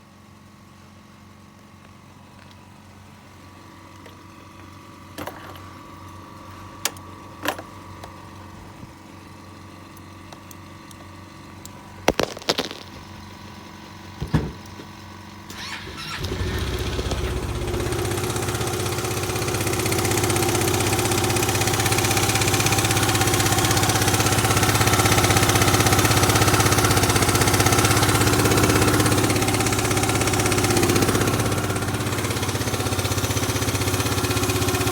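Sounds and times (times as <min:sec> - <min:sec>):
scooter engine running: 0:15.5 - 0:34.9.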